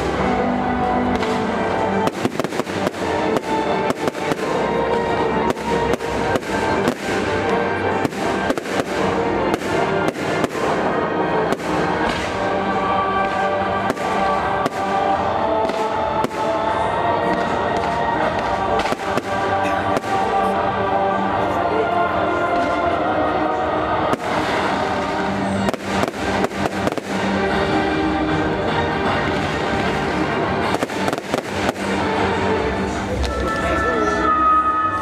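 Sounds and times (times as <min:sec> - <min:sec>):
music soundtrack: 0:00.0 - 0:35.0
fireworks bangs: 0:01.1 - 0:20.6, 0:24.0 - 0:27.8, 0:29.0 - 0:33.0.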